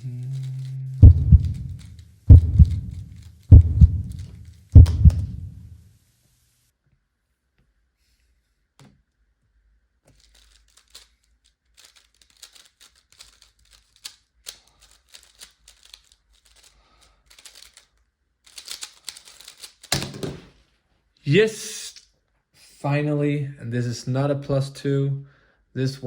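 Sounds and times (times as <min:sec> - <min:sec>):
plastic cube clicks and rattles: 0:00.3 - 0:03.5, 0:10.0 - 0:20.4
sharp tap on timer: 0:04.8 - 0:05.3.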